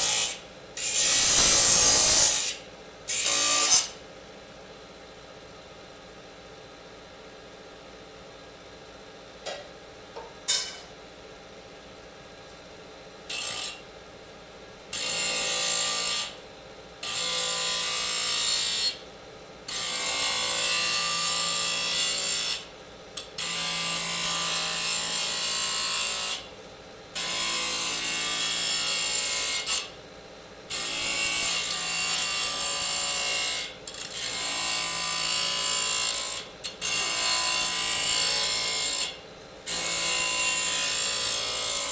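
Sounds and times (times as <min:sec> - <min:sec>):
disc saw cutting metal: 0:00.0 - 0:04.0, 0:13.3 - 0:13.8, 0:15.0 - 0:16.3, 0:17.0 - 0:19.0, 0:19.7 - 0:22.6, 0:23.4 - 0:26.4, 0:27.2 - 0:29.9, 0:30.7 - 0:41.9.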